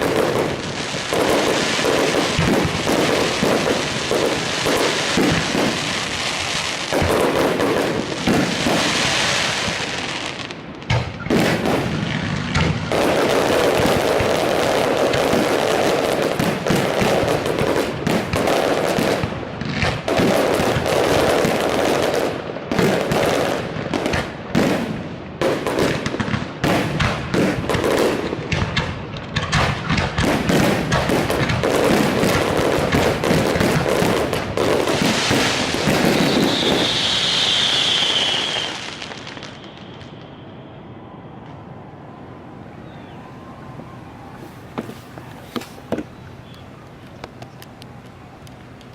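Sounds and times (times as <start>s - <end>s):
fireworks bangs and crackling: 0.0s - 48.9s
high falling firework whistle: 35.0s - 46.5s.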